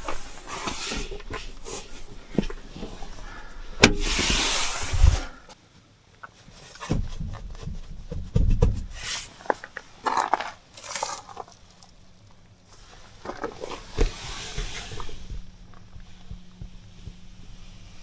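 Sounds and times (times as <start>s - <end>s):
handling clicks and knocks: 0.0s - 4.4s.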